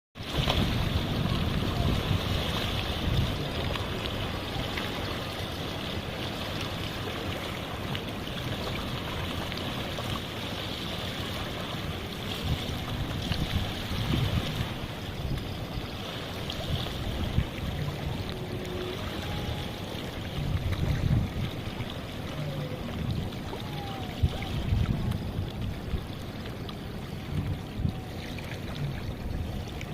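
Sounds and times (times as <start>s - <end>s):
small waves lapping: 0.2s - 29.9s
low rumble: 16.8s - 29.9s.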